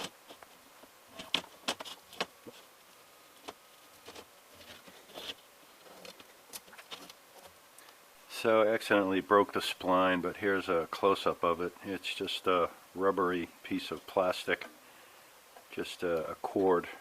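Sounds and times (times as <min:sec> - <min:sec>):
small clicks and scrapes: 0:00.0 - 0:02.7, 0:03.3 - 0:08.0.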